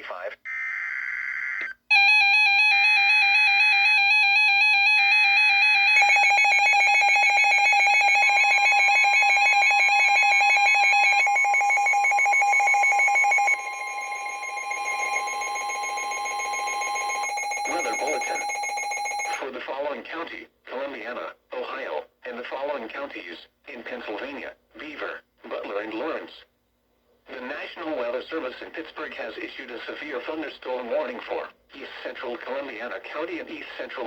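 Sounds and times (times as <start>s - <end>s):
warbling electronic alarm: 0.5s - 19.4s
steady high alert tone: 5.8s - 19.4s.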